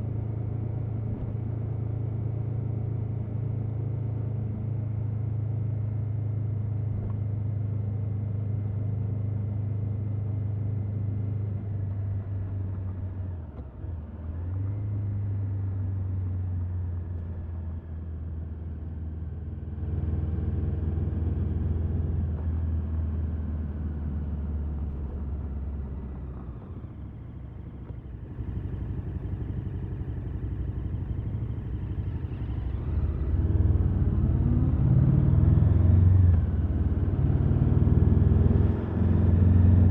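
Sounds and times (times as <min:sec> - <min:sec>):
motorcycle engine running: 0:24.5 - 0:35.0.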